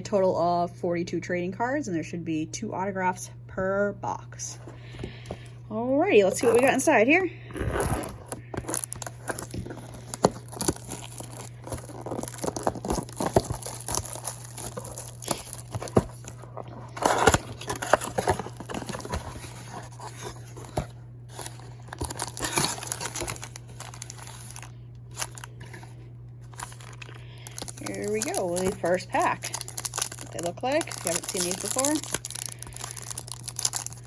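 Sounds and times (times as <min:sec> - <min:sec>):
low hum: 0:03.3 - 0:34.0
packaging crinkling and tearing: 0:06.4 - 0:06.9, 0:07.5 - 0:34.0.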